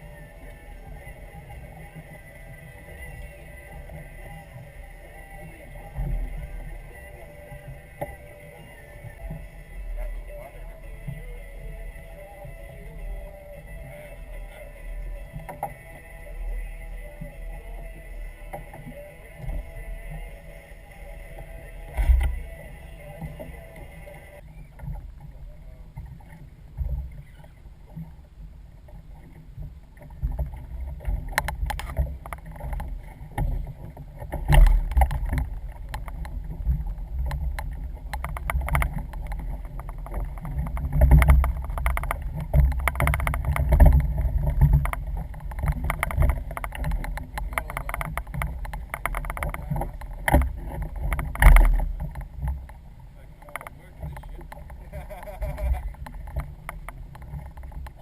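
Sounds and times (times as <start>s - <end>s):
steady hum: 0.0s - 58.0s
wind rumble on microphone: 0.0s - 58.0s
knocks and slaps against hull: 30.2s - 52.8s.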